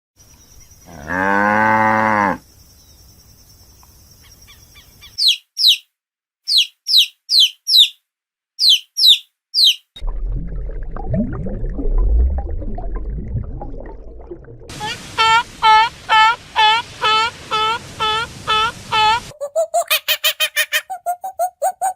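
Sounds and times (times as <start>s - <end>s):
cow mooing: 0.9s - 2.4s
small bird chirping: 2.6s - 5.9s, 6.5s - 8.0s, 8.6s - 10.0s
low calls: 8.6s - 9.9s, 14.7s - 21.9s
loud low rumble: 10.0s - 14.7s.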